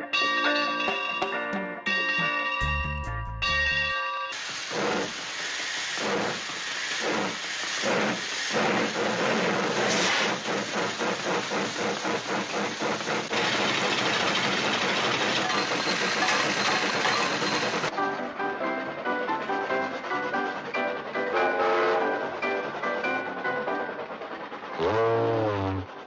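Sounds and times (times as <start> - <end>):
steam locomotive chuffing: 0.9 - 26.0
steady hiss: 4.3 - 13.4.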